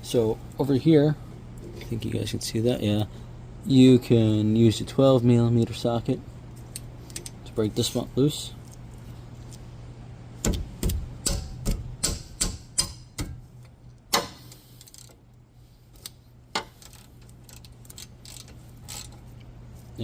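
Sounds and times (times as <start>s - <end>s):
ratchet wrench clicking: 16.7s - 19.2s.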